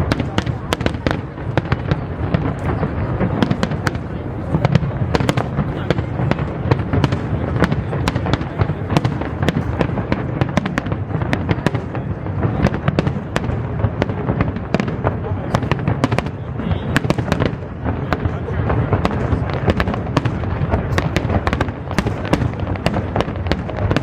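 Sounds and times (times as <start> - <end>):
fireworks crackling and banging: 0.0 - 24.0.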